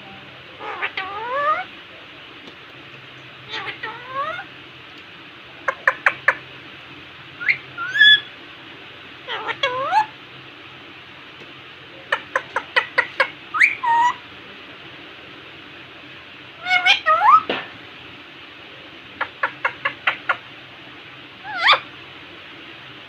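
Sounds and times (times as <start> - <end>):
parakeet chirping and whistling: 7.4 - 8.3, 9.3 - 10.1, 12.3 - 14.2, 16.6 - 17.5, 21.4 - 21.9.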